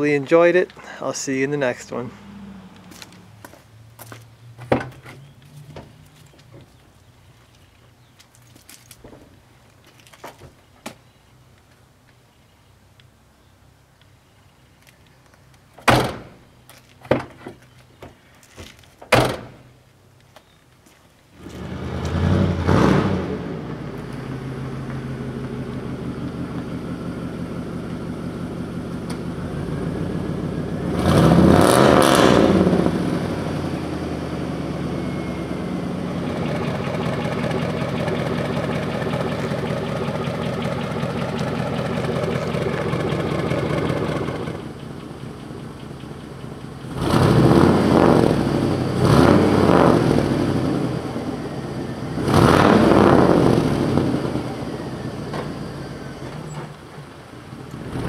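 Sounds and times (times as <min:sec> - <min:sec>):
truck engine starting and revving: 0:01.5 - 0:06.5, 0:21.4 - 0:58.0.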